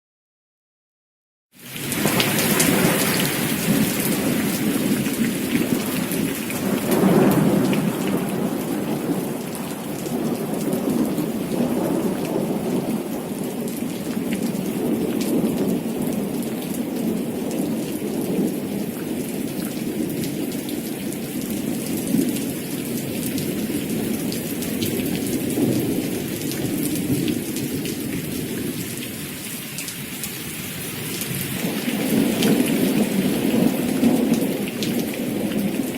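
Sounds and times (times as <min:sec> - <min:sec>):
heavy rain: 0:01.6 - 0:35.9
thunder rumble: 0:01.8 - 0:20.2.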